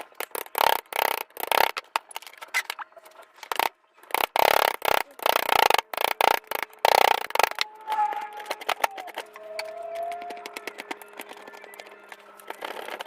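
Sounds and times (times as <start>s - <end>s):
tune: 7.1s - 13.0s.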